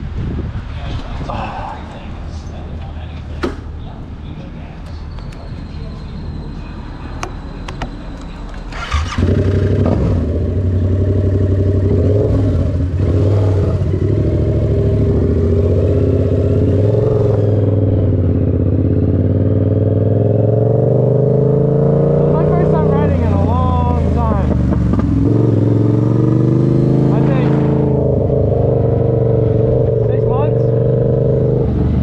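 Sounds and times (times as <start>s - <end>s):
engine cranking: 7.2s - 9.8s.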